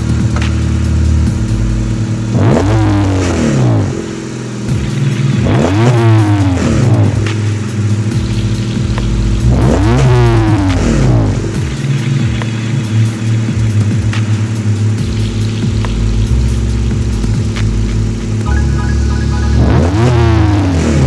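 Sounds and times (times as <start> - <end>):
car engine idling and revving: 0.0 - 21.0.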